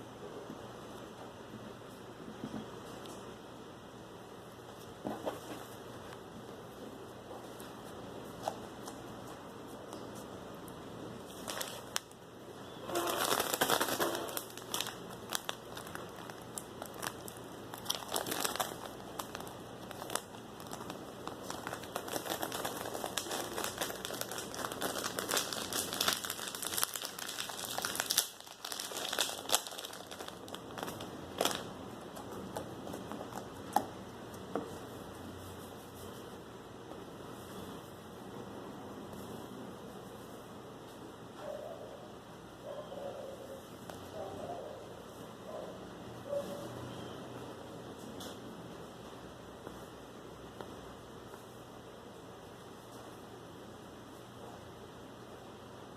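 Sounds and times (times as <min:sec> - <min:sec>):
slime crackling and popping: 0:12.9 - 0:31.7.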